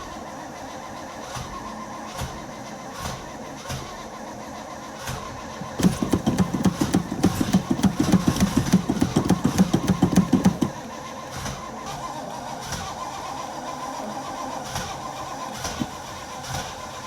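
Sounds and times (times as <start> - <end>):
car engine starter cranking: 5.6 - 10.8.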